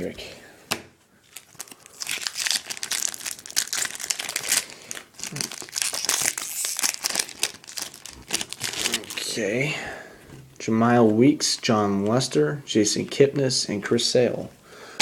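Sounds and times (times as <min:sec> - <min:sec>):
foil wrapper crinkling and tearing: 0:01.2 - 0:09.3.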